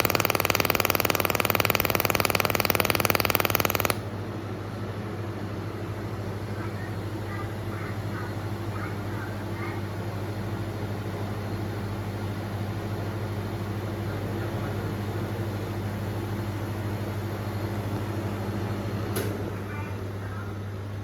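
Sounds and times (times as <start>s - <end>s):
welding machine humming: 0.0s - 4.1s.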